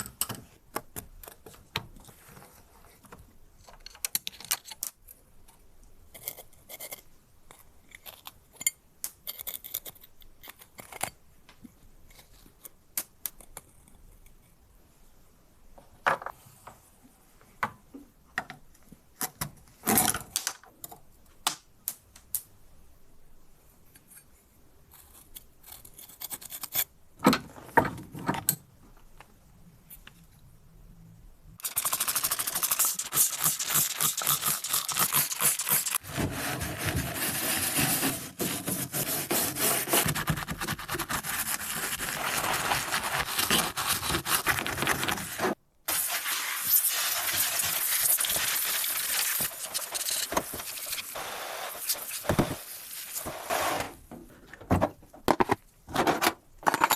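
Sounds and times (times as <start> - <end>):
metal parts clicking and scraping: 49.2 - 51.0.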